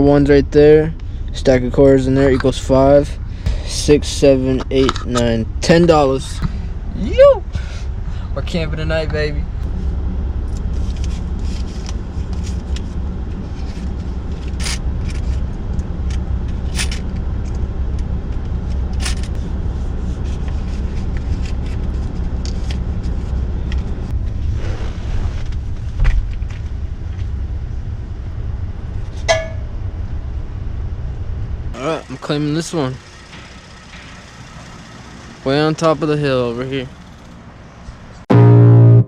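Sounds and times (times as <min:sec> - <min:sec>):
car engine and road rumble: 0:00.0 - 0:39.0.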